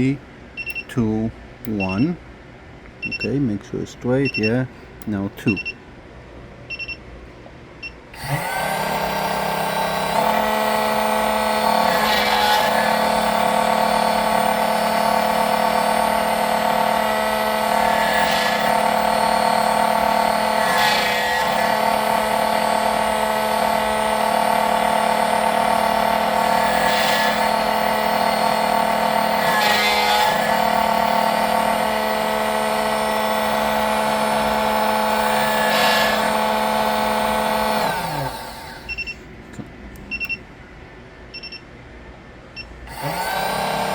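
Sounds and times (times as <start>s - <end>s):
key cutting machine whining: 8.2s - 39.1s, 42.9s - 43.9s.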